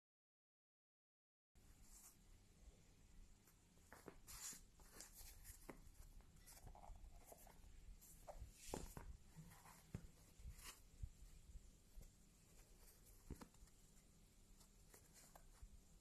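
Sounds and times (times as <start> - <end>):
faint handling rustles and clicks: 3.4 - 15.8.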